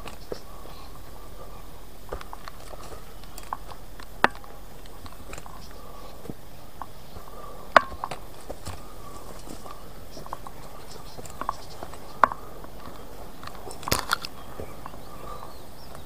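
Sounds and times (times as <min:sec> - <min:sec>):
footsteps on twigs and leaves: 0:00.0 - 0:16.0.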